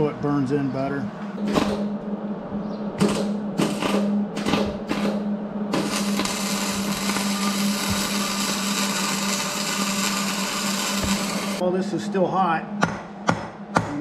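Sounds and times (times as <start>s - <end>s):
steady low hum: 0.0s - 14.0s
welder arc striking: 3.0s - 11.6s
welder crackling hiss: 5.8s - 11.6s.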